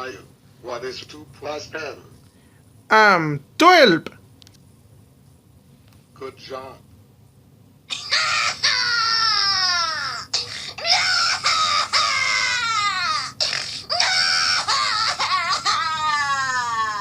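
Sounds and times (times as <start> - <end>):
cartoon baby crying: 7.9 - 17.0.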